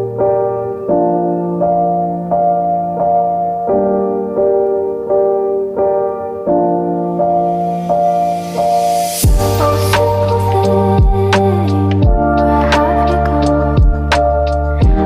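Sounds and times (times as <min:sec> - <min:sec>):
keyboard playing chords: 0:00.0 - 0:15.0.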